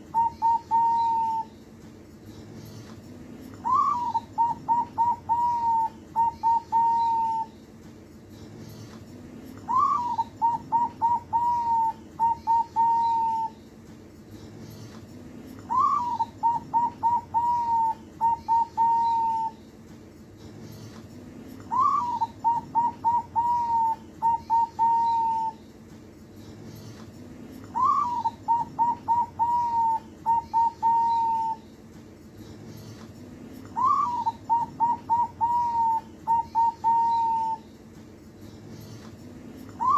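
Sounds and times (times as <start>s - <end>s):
dove cooing: 0.0s - 1.5s, 3.6s - 7.5s, 9.7s - 13.6s, 15.7s - 19.6s, 21.7s - 25.6s, 27.7s - 31.6s, 33.6s - 37.6s, 39.6s - 39.9s.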